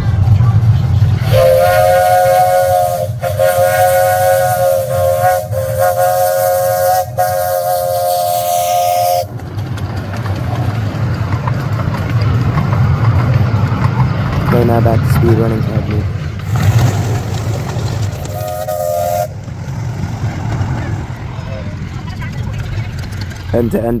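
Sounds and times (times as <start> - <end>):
low rumble: 0.0 - 24.0
steam locomotive whistle: 1.2 - 9.3, 18.2 - 19.5.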